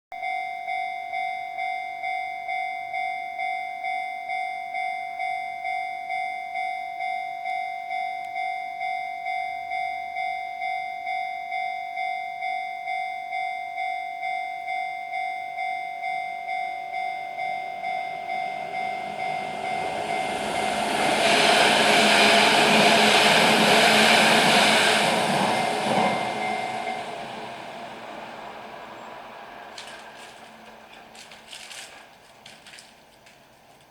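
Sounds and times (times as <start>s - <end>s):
level crossing bell ringing: 0.2s - 20.9s
train rumbling over crossing: 16.4s - 33.4s.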